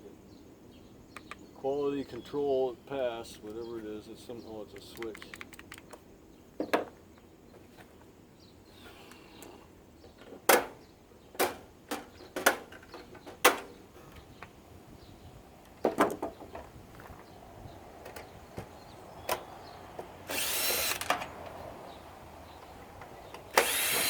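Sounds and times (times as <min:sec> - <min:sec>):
plastic parts knocking and clicking: 0:04.8 - 0:06.0.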